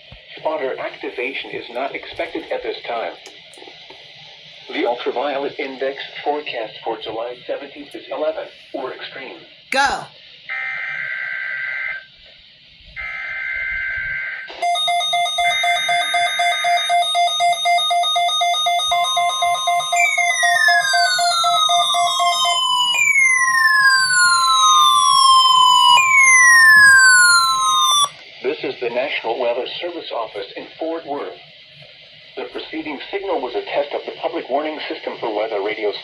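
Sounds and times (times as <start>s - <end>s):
falling whistle sweeps: 14.6s - 28.2s
screeching data bursts: 14.6s - 28.2s
steady warning alarm tone: 14.6s - 28.2s
fast-pulsing buzzy tone: 14.7s - 28.1s.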